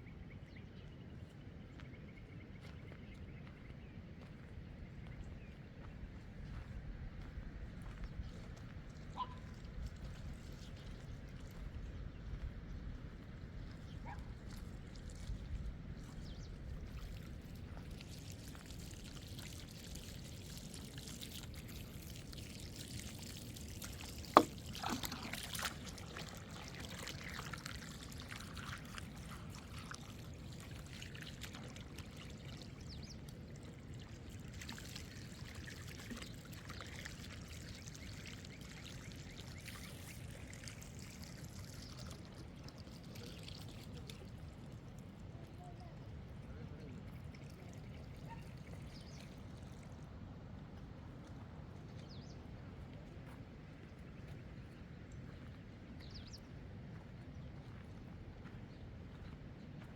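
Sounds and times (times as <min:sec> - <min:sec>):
liquid pouring: 0:16.9 - 0:44.8.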